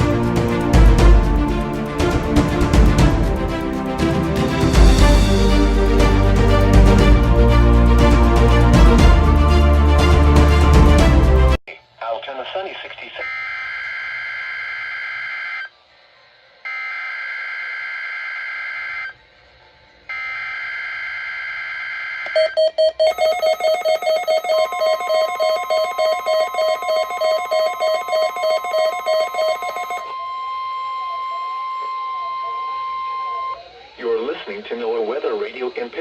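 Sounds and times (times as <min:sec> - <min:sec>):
warbling alarm: 0:13.2 - 0:15.7, 0:16.6 - 0:19.2, 0:20.1 - 0:34.0
fast pulsing beep alarm: 0:16.7 - 0:19.2, 0:20.1 - 0:33.9
steady warning tone: 0:20.1 - 0:35.9.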